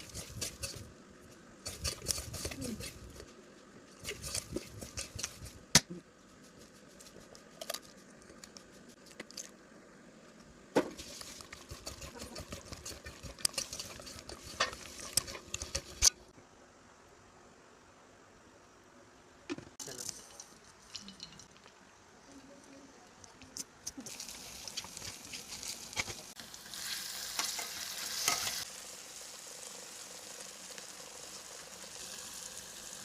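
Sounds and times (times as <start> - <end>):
utensil clinking and scraping cookware: 11.1 - 16.1.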